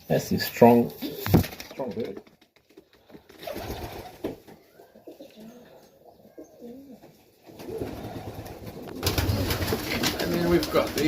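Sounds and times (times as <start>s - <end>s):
pigeons cooing: 3.2s - 11.0s.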